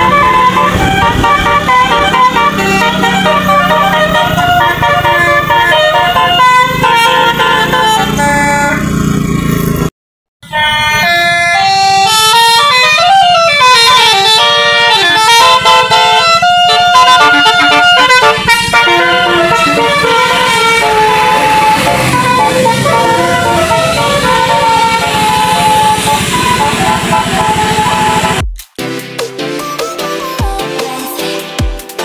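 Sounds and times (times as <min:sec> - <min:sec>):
musical air horn playing tune: 0:00.0 - 0:09.0, 0:10.4 - 0:28.4.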